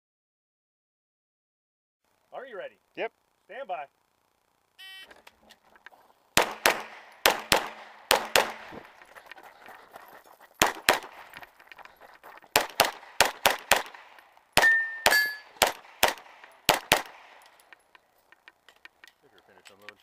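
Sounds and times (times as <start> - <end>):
pistol shots: 6.4 - 9.0, 10.6 - 11.5, 12.5 - 17.8
steel target ringing: 14.6 - 15.6.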